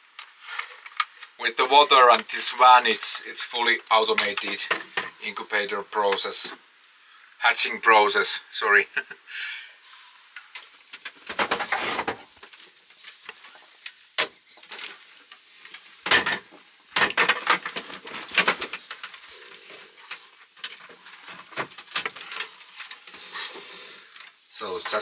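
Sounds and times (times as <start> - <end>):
plastic parts clicking and knocking: 15.7 - 19.3, 20.0 - 23.2.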